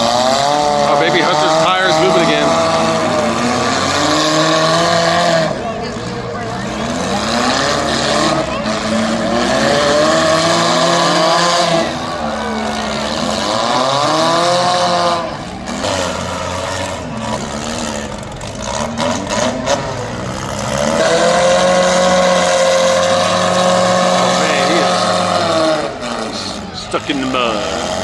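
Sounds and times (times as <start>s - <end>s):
car engines revving hard: 0.0s - 28.0s.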